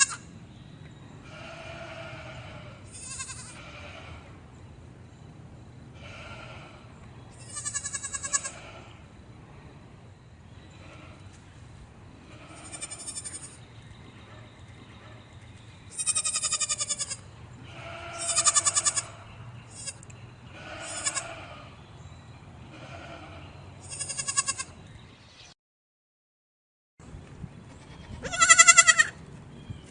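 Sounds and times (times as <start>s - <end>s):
goats bleating: 1.3s - 4.1s, 7.4s - 8.9s, 16.0s - 20.0s, 20.6s - 21.7s, 22.7s - 24.7s, 27.8s - 29.2s.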